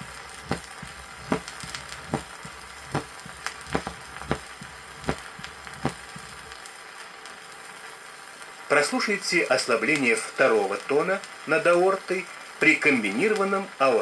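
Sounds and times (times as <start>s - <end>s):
heartbeat: 0.0s - 6.5s
record hiss: 0.0s - 14.0s.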